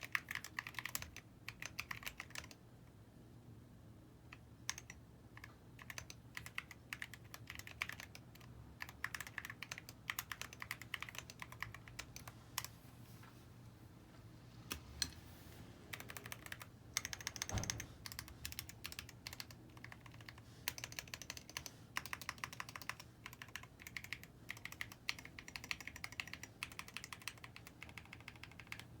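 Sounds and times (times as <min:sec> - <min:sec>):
mechanical keyboard typing: 0:00.0 - 0:02.6, 0:04.6 - 0:12.7, 0:15.9 - 0:29.0.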